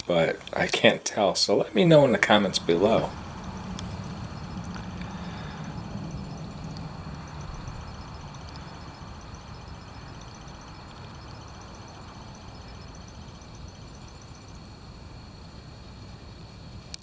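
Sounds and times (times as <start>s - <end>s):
low rumble: 2.2s - 14.9s
rapid high-pitched chirping: 2.3s - 15.2s.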